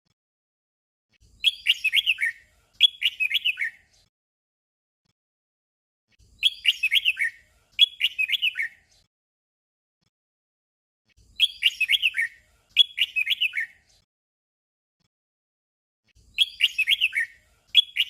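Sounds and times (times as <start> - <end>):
bird warbling song: 1.3 - 3.9, 6.3 - 8.9, 11.2 - 13.9, 16.2 - 18.0.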